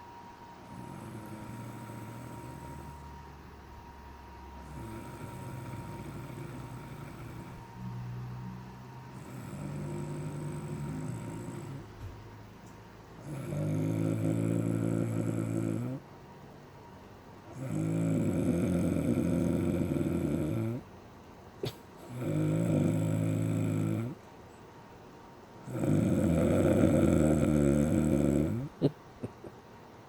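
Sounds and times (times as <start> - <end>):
woman snoring: 0.6 - 3.1, 4.6 - 7.8, 9.1 - 11.9, 13.2 - 16.0, 17.5 - 20.8, 22.0 - 24.2, 25.7 - 28.9.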